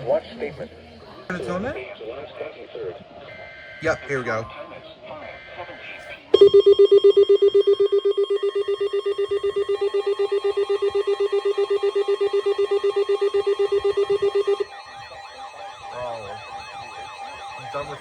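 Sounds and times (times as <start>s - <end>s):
faint electronic tones: 6.4s - 18.0s
rapidly pulsing alarm beep: 6.4s - 18.0s.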